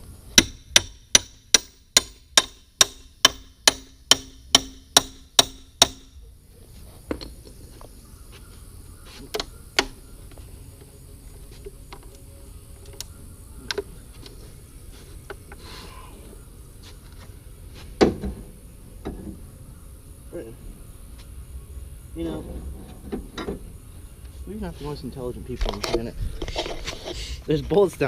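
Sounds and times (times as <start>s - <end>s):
hammer striking metal: 0.4s - 6.1s.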